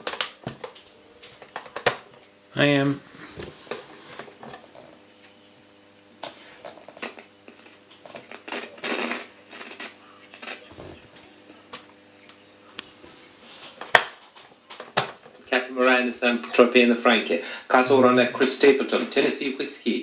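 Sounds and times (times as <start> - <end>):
radio speaker low hum with static: 0.0 - 20.0.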